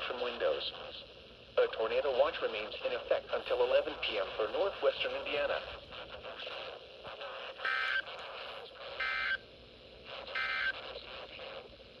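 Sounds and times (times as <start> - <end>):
receiver hiss: 0.0 - 12.0
warbling two-tone data chirp: 10.3 - 10.8.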